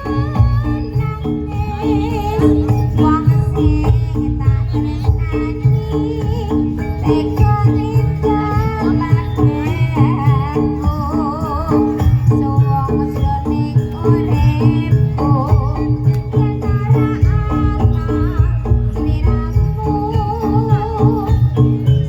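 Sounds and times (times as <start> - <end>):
metal percussion notes: 0.0 - 22.0
wavering melody line: 0.0 - 22.0.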